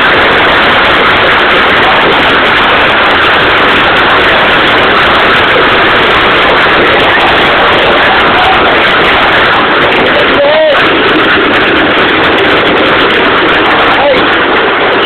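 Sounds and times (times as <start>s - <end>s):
hail and heavy rain: 0.0s - 15.0s.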